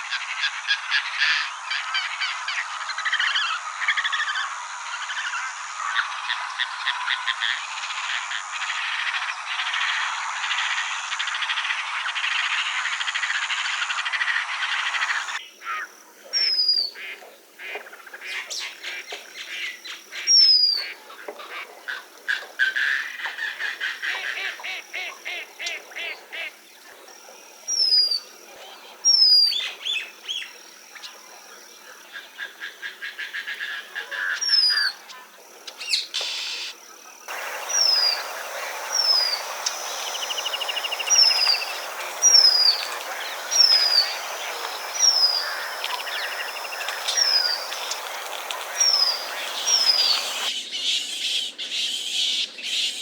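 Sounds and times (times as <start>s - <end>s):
frogs croaking: 0.0s - 50.6s
birds chattering: 37.3s - 50.5s.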